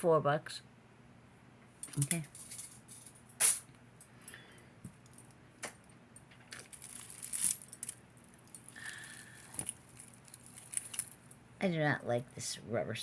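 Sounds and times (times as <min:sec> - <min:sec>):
metal jewelry clinking: 0:01.8 - 0:04.1, 0:06.2 - 0:11.4.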